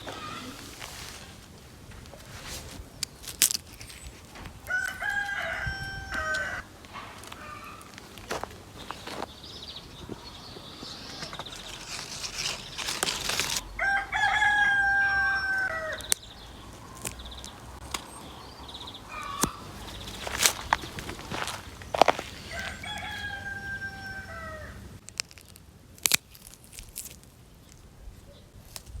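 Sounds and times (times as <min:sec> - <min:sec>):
crackles and snaps: 0:00.6 - 0:09.3, 0:10.9 - 0:13.6, 0:15.7 - 0:18.2, 0:19.3 - 0:23.2, 0:25.0 - 0:29.0
rooster crowing: 0:04.6 - 0:07.9, 0:13.6 - 0:16.2, 0:22.0 - 0:24.9.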